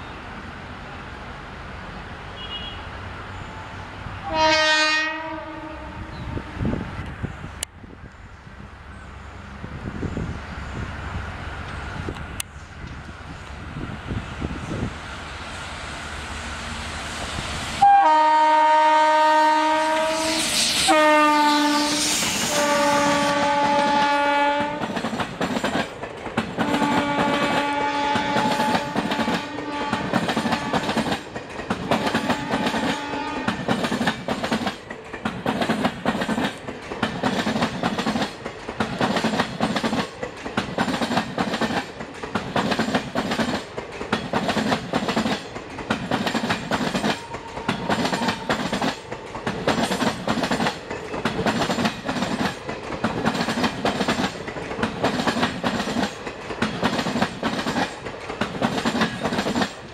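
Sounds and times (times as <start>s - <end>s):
locomotive horn blasts: 2.4s - 2.9s, 4.2s - 6.6s, 17.8s - 24.9s, 26.6s - 30.9s, 32.2s - 33.7s
train wheels clattering: 19.7s - 59.9s.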